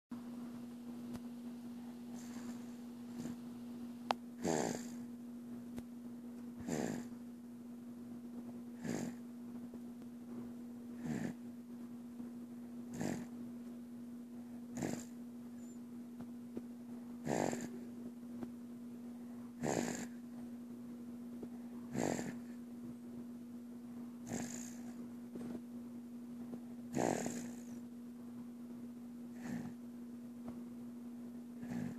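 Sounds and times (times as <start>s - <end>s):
steady low hum: 0.1s - 31.9s
baby snoring: 2.2s - 3.4s, 4.4s - 5.1s, 6.6s - 7.2s, 8.8s - 9.2s, 11.0s - 11.4s, 12.9s - 13.3s, 14.8s - 15.2s, 17.2s - 17.9s, 19.6s - 20.2s, 21.9s - 22.6s, 24.2s - 25.0s, 26.9s - 27.8s, 29.3s - 29.8s, 31.6s - 31.9s.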